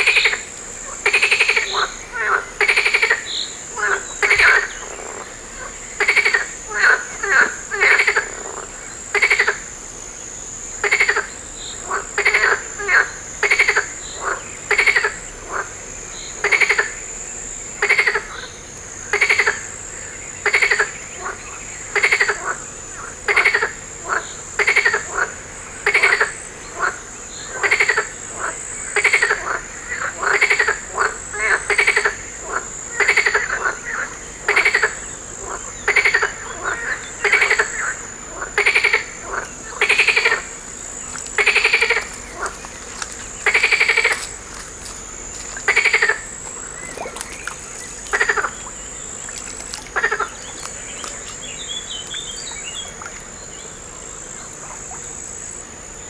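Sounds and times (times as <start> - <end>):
frogs croaking: 0.0 - 56.0.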